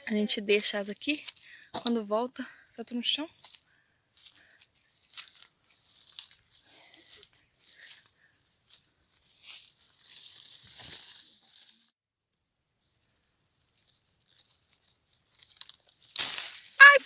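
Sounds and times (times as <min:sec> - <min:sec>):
leaves and branches rustling: 0:02.9 - 0:11.9, 0:12.8 - 0:17.0.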